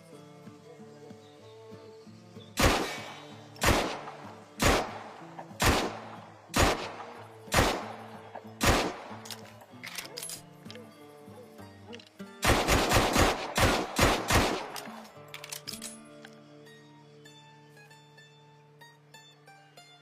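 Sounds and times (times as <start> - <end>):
background music: 0.0 - 20.0
pistol shots: 2.6 - 9.5, 12.4 - 15.1.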